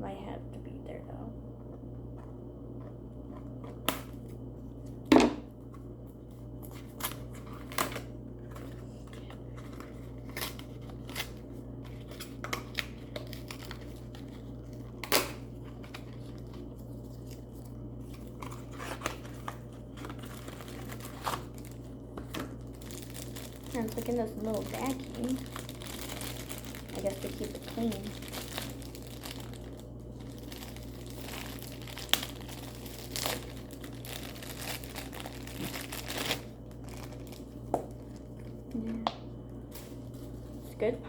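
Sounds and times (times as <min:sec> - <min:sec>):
plastic packaging crinkling: 0:06.4 - 0:38.7.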